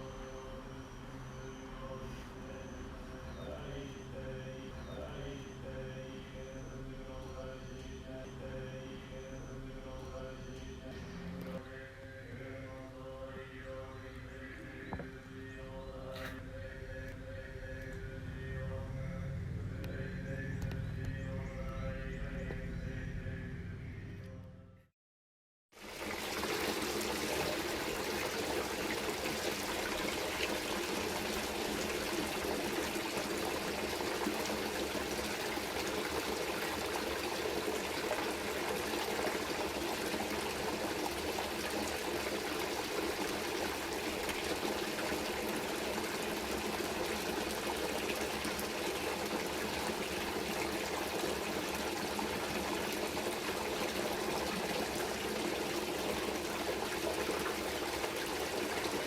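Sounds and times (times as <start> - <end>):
running water stream: 25.7 - 59.0.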